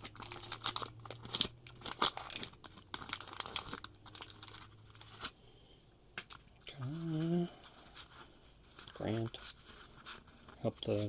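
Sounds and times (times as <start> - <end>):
card pack crinkling: 0.0 - 5.3.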